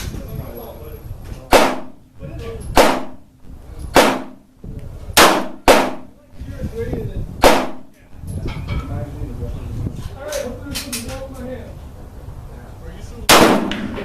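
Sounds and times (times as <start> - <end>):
pistol shots ringing out: 1.5 - 2.0, 2.8 - 3.2, 3.9 - 4.4, 5.2 - 6.1, 7.4 - 7.9, 13.3 - 14.0.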